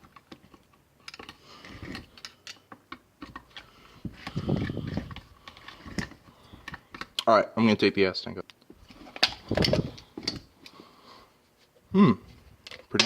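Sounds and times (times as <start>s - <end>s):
rustling and knocking: 8.8s - 10.4s
objects clicking and clattering: 8.9s - 10.5s.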